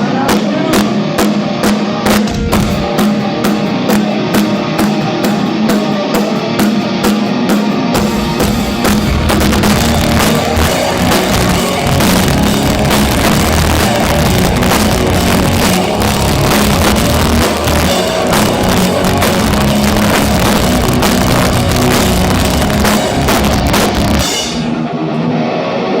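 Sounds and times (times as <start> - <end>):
heavy rock band playing live: 0.0 - 26.0.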